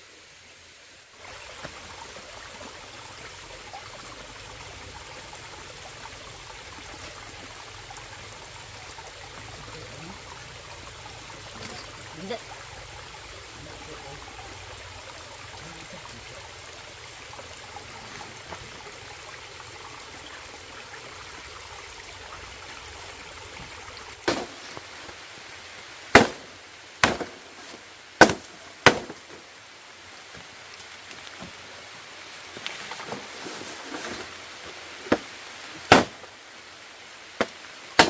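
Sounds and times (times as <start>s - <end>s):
running water: 0.3s - 38.0s
firewood being chopped: 24.2s - 24.9s, 26.1s - 29.4s, 35.1s - 35.3s, 35.9s - 36.3s.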